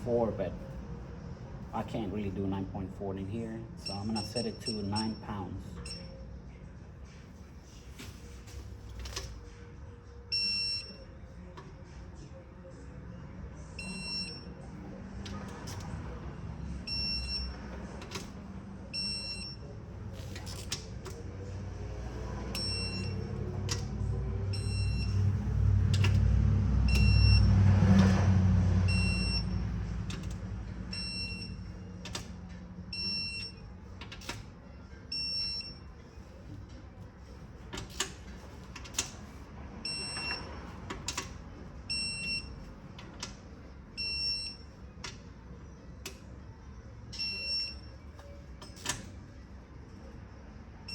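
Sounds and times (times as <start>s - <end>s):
torque wrench beeping: 3.8s - 6.2s, 22.5s - 23.9s, 24.5s - 25.3s, 26.9s - 27.5s, 28.9s - 32.3s, 32.9s - 34.5s, 44.0s - 44.8s.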